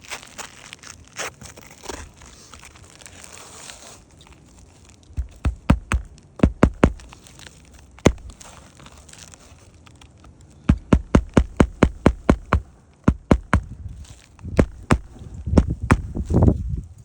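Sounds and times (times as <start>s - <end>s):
sharp knocks: 5.2s - 7.1s, 8.1s - 8.4s, 10.7s - 13.7s, 14.6s - 16.2s.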